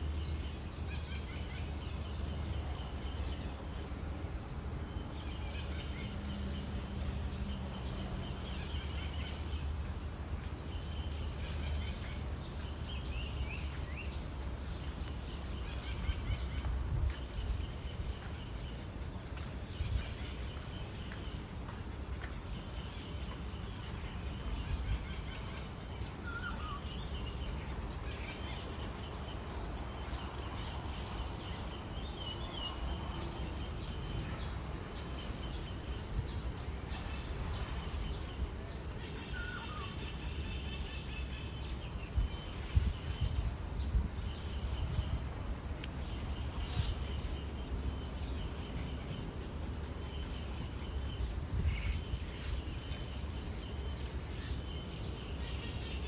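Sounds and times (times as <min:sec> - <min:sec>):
cicadas buzzing: 0:00.0 - 0:56.0
faint bird calls chirping: 0:24.5 - 0:28.9, 0:39.0 - 0:45.0.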